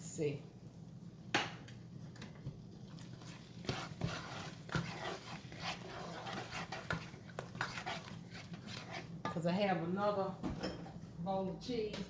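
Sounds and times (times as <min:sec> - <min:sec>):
spoon scraping a saucepan: 0:03.2 - 0:09.2.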